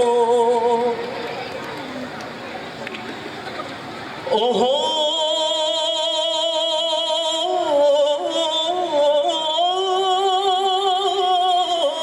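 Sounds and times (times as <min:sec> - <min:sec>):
man singing melismatic notes: 0:00.0 - 0:01.2, 0:04.2 - 0:12.0.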